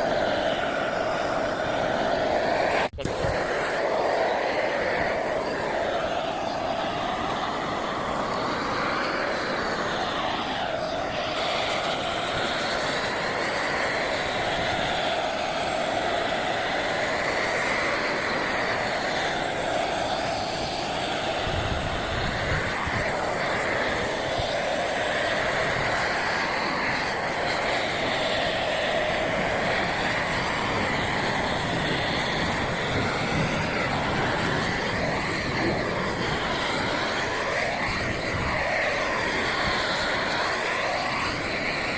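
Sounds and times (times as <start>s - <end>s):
propane torch burning: 0.0s - 41.9s.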